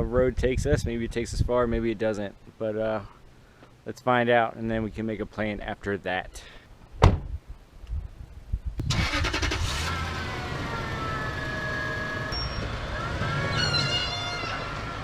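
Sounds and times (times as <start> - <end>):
car engine starting and idling: 8.8 - 15.0.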